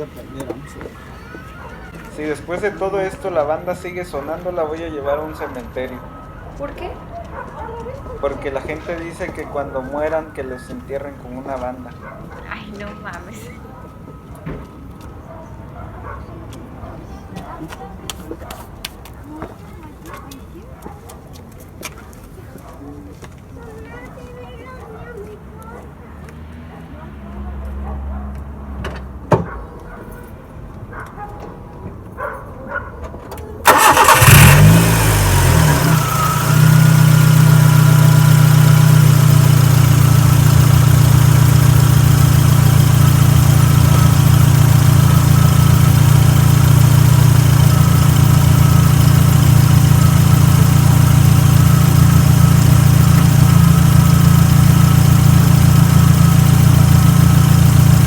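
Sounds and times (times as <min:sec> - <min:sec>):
car engine idling: 0:00.0 - 0:14.4, 0:33.6 - 0:58.0
car starter cranking: 0:33.6 - 0:58.0.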